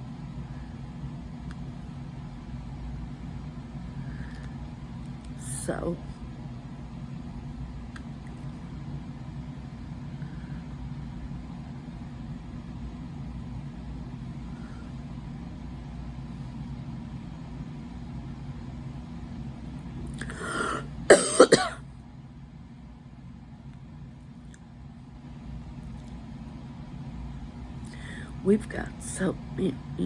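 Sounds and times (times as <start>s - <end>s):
steady low hum: 0.0s - 30.0s
breath in: 20.2s - 20.8s, 27.9s - 28.3s
person coughing: 20.2s - 21.8s.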